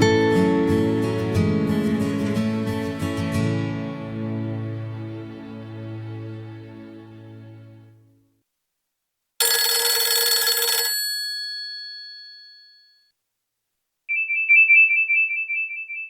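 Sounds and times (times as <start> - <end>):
bright chime-like ringtone: 9.4 - 13.1, 14.1 - 16.0.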